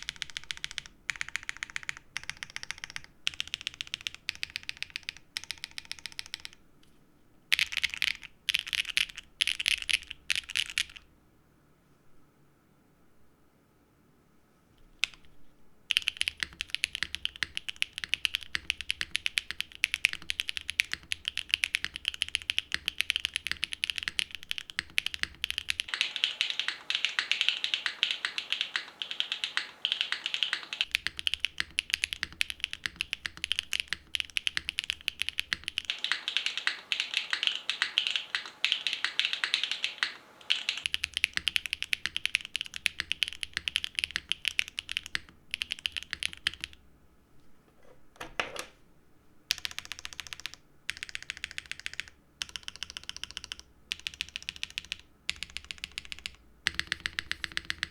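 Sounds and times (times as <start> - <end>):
mechanical keyboard typing: 0.0 - 6.6, 7.5 - 11.0, 15.0 - 15.3, 15.9 - 46.8, 49.5 - 57.9.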